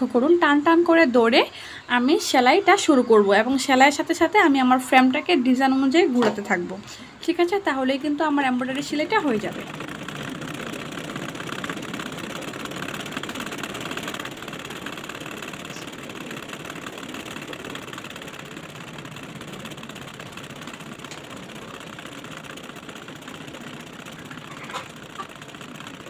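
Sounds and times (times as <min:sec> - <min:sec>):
sewing machine running: 0:07.1 - 0:26.0.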